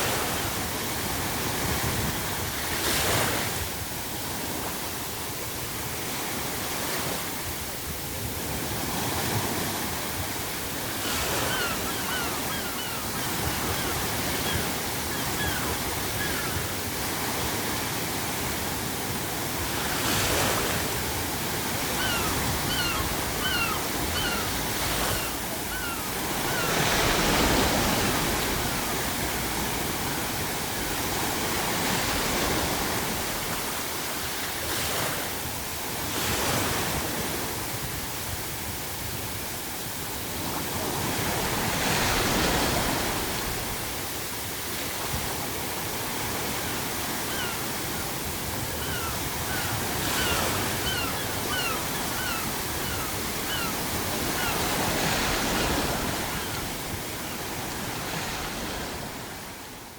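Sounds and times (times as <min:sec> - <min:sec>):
ocean waves breaking: 0:00.0 - 0:59.9
gull crying: 0:11.3 - 0:16.7, 0:22.0 - 0:27.3, 0:48.8 - 0:53.8.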